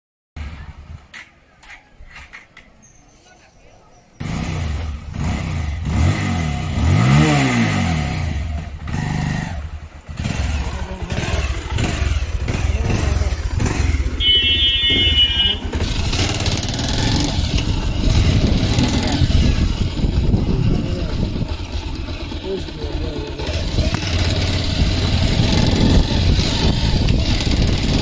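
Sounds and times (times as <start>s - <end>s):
motorcycle engine knocking: 9.8s - 28.0s.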